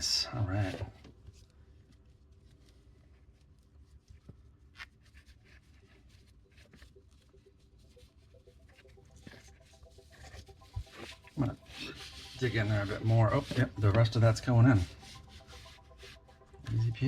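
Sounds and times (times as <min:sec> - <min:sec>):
rope rubbing by hand: 0:01.4 - 0:17.0.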